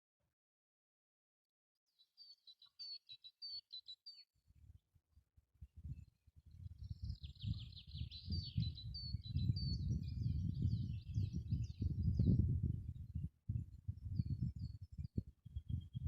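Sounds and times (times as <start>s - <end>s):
bird chirping: 2.0s - 4.3s, 6.5s - 16.0s.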